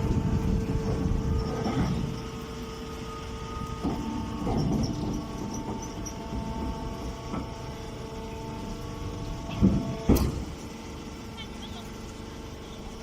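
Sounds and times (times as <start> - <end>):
machinery humming and rumbling: 0.0 - 13.0.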